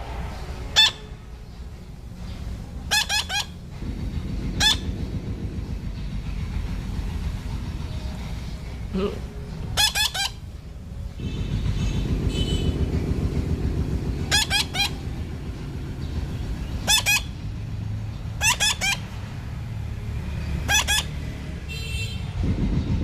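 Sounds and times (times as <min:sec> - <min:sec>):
low background rumble: 0:00.0 - 0:23.0
parrot squawking: 0:00.7 - 0:01.1, 0:02.9 - 0:03.6, 0:04.6 - 0:04.9, 0:09.0 - 0:10.5, 0:14.2 - 0:15.2, 0:16.6 - 0:17.4, 0:18.3 - 0:19.2, 0:20.4 - 0:21.4.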